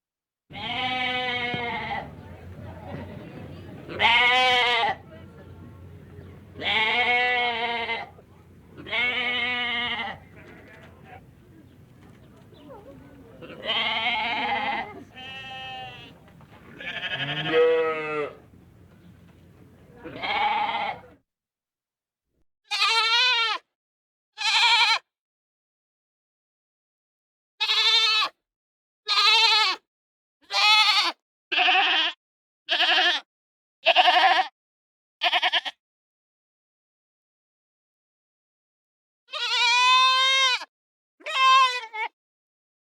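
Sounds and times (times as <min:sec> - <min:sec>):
goat bleating: 0:00.5 - 0:21.2, 0:22.7 - 0:23.6, 0:24.4 - 0:25.0, 0:27.6 - 0:28.3, 0:29.1 - 0:29.8, 0:30.5 - 0:33.2, 0:33.9 - 0:34.5, 0:35.2 - 0:35.7, 0:39.3 - 0:40.7, 0:41.3 - 0:42.1.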